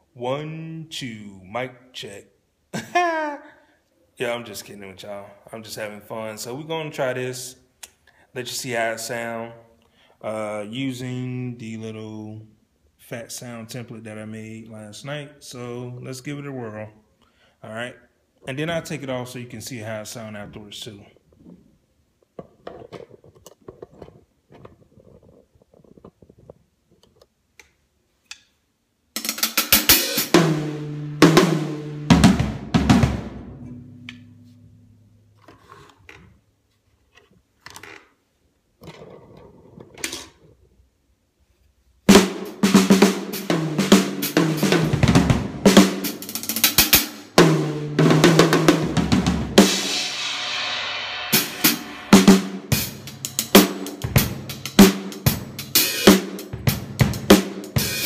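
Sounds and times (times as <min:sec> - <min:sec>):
drum kit groove: 0:29.2 - 0:34.6, 0:42.1 - 0:58.0
snare and tom hits: 0:42.1 - 0:58.0
cymbal wash: 0:49.6 - 0:54.0.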